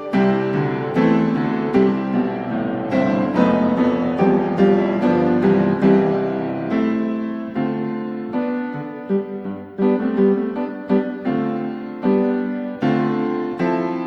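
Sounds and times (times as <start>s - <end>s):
piano chords and notes: 0.0s - 14.0s.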